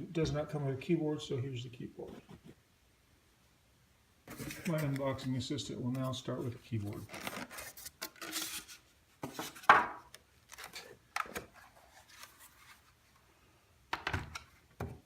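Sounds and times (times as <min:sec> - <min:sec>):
packaging rustling and scraping: 0:04.3 - 0:05.3, 0:05.9 - 0:09.7, 0:10.4 - 0:13.1.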